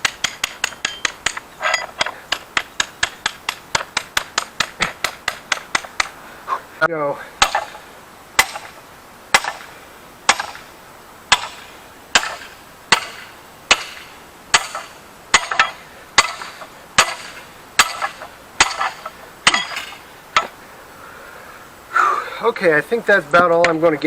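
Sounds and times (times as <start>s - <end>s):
hammer striking steel vise: 0.0s - 5.9s, 14.6s - 20.5s.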